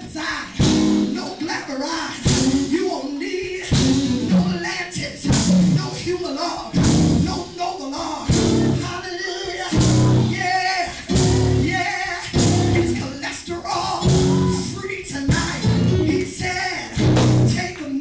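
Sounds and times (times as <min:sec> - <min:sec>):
live church band music: 0:00.0 - 0:18.0
heavy low notes: 0:03.7 - 0:04.6, 0:05.2 - 0:06.1, 0:06.8 - 0:07.6, 0:08.3 - 0:08.9, 0:09.8 - 0:10.4, 0:11.1 - 0:13.1, 0:14.0 - 0:16.3, 0:17.0 - 0:17.6
voices singing or shouting: 0:08.2 - 0:18.0.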